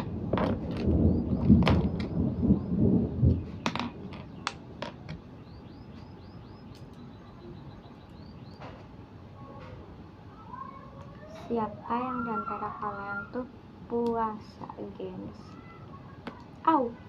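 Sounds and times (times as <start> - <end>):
distant thunder rumble: 0.0 - 8.8.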